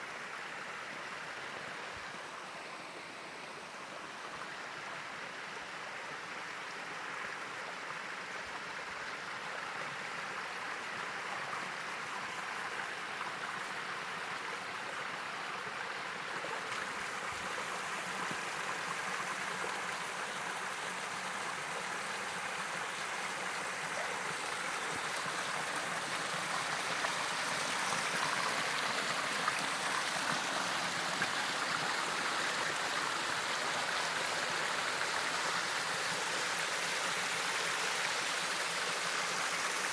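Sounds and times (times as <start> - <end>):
running water rushing: 8.9 - 39.9.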